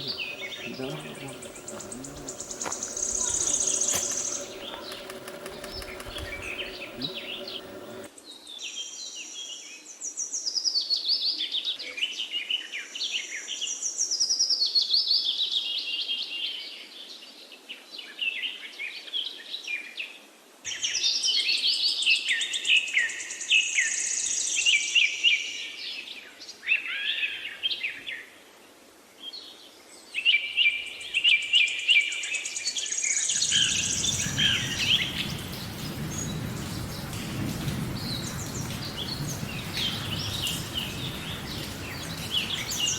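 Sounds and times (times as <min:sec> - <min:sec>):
birds singing and chirping: 0:00.0 - 0:08.1, 0:30.3 - 0:42.9.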